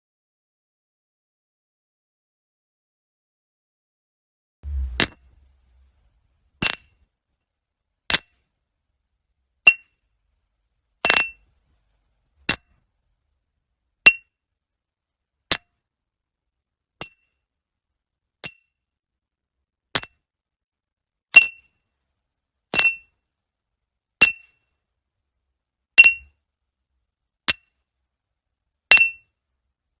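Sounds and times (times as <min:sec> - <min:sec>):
glass tapping clinks: 0:11.1 - 0:11.4, 0:22.8 - 0:23.1, 0:26.0 - 0:26.3, 0:28.9 - 0:29.3.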